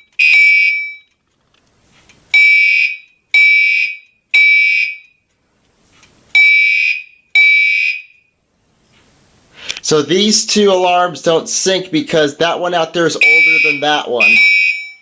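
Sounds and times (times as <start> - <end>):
buzzy fire alarm horn blasts: 0.0 - 1.1, 2.3 - 5.3, 6.3 - 8.4, 13.2 - 15.0.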